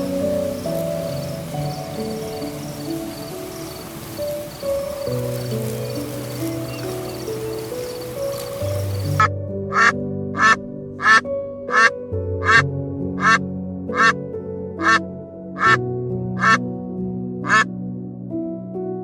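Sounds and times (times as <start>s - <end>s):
soft background music: 0.0s - 19.0s
animal giving short calls: 9.7s - 12.6s, 13.2s - 14.1s, 14.8s - 15.0s, 15.6s - 15.8s, 16.4s - 16.6s, 17.4s - 17.6s.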